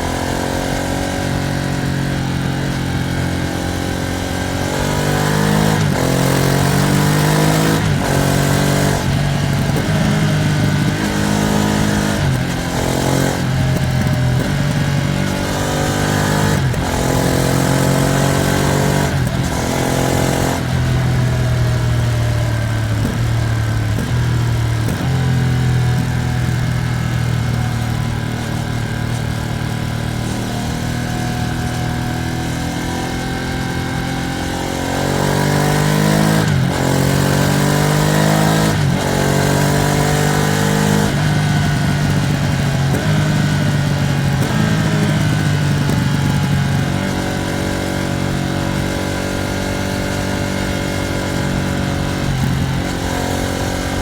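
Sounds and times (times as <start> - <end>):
motorcycle engine revving through gears: 0.0 - 54.0.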